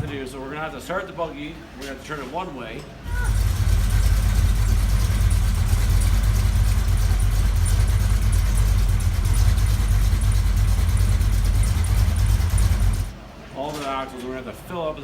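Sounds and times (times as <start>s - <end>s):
buggy engine running steadily: 3.0s - 13.2s.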